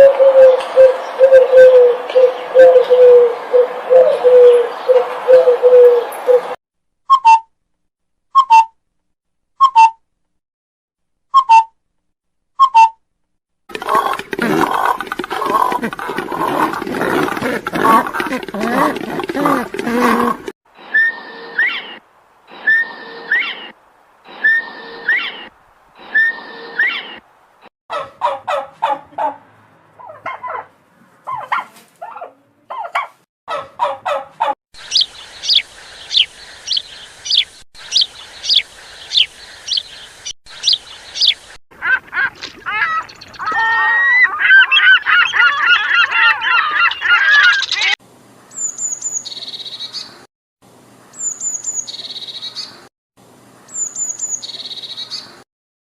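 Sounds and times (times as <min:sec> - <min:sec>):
bird calls: 0:00.0 - 0:06.6, 0:13.7 - 0:27.2, 0:34.8 - 0:50.3, 0:51.1 - 0:52.9, 0:53.7 - 0:55.4
birds chattering: 0:13.7 - 0:20.5, 0:34.8 - 0:48.0.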